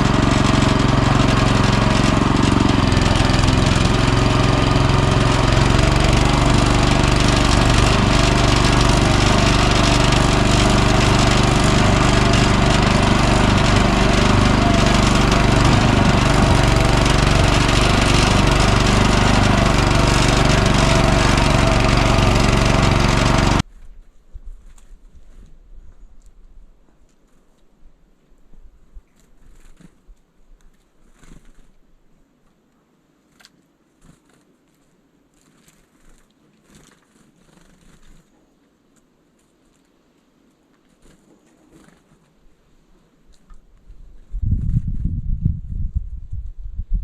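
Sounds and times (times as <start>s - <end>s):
tractor engine chugging: 0.0s - 23.6s.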